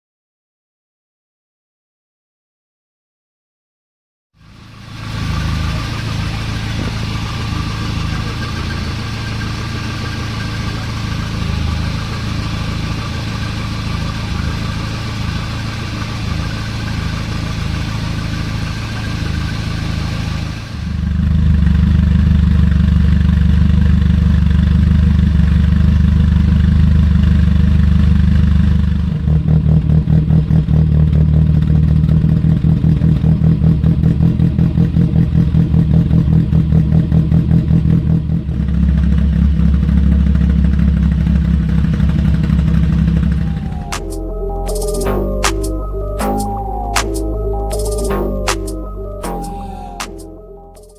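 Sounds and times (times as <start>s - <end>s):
car engine idling: 4.5s - 43.9s.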